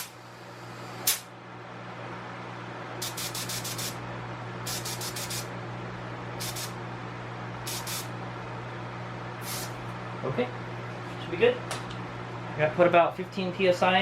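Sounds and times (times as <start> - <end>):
tire inflator air hissing: 0.0 - 1.3, 3.0 - 4.0, 4.7 - 5.5, 6.4 - 6.8, 7.7 - 8.1, 9.4 - 9.8
steady low hum: 0.0 - 14.0.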